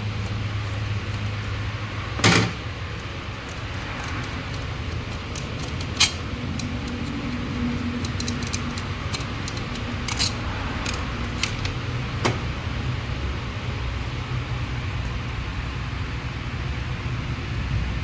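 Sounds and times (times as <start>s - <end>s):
small metal objects clinking: 3.0s - 12.0s.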